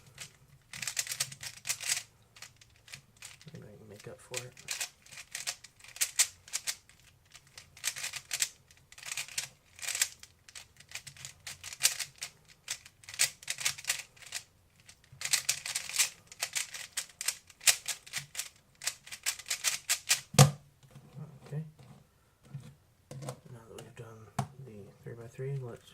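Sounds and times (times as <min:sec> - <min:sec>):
plastic puzzle cube clicking: 0:00.2 - 0:03.5, 0:04.3 - 0:20.3.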